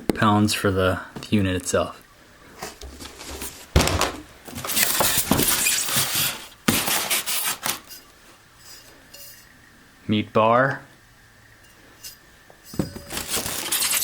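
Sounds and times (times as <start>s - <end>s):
packaging rustling and scraping: 2.6s - 9.5s, 12.0s - 14.0s
sharp knocks: 3.8s - 4.3s.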